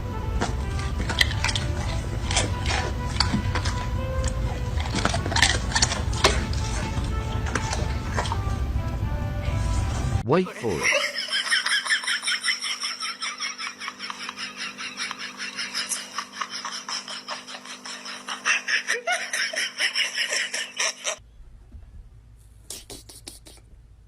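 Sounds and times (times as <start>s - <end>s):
steady low hum: 0.0s - 19.4s
rapid high-pitched laughter: 10.6s - 21.2s.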